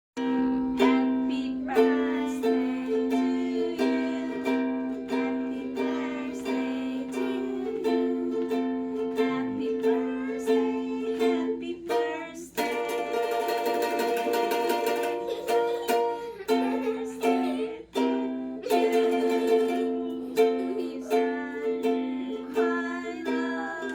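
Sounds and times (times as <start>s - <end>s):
ukulele strumming: 0.2s - 23.9s.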